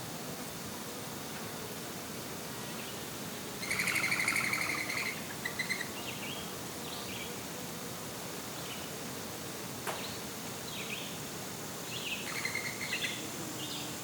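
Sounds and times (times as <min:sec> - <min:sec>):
light breeze hiss: 0:00.0 - 0:14.0
songbird trilling and chirping: 0:03.6 - 0:06.4.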